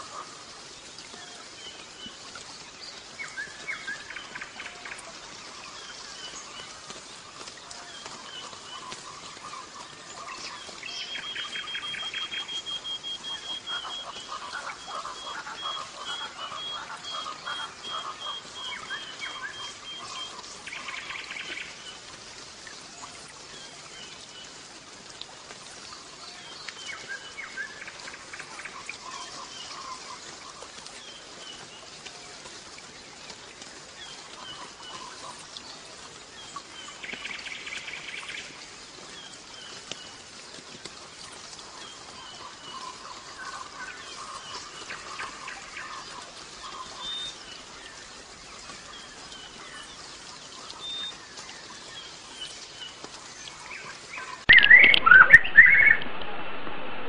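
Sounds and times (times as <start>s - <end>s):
goldfinch singing: 54.2s - 56.0s.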